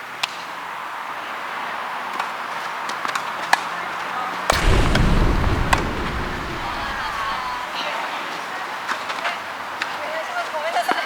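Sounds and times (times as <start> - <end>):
loud low rumble: 4.5 - 7.6
steady hiss: 4.5 - 7.6.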